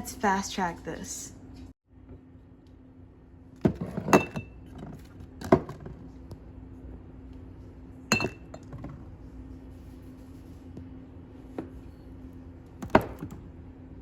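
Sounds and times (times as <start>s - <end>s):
steady low hum: 0.0s - 14.0s
glass jars knocking and clinking: 3.7s - 4.8s, 8.1s - 8.9s.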